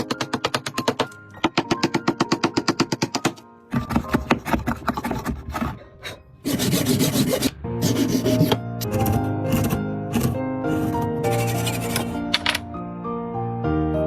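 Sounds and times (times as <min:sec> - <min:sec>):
tool rasping on wood: 0:04.0 - 0:12.2.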